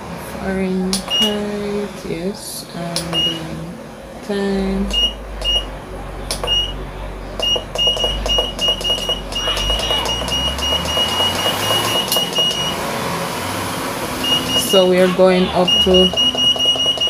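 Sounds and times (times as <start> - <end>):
control box short high beeps: 4.9 - 5.7, 6.4 - 6.8, 7.4 - 12.8, 14.2 - 14.8, 15.6 - 17.0
button clicks: 6.3 - 6.7, 7.4 - 12.7.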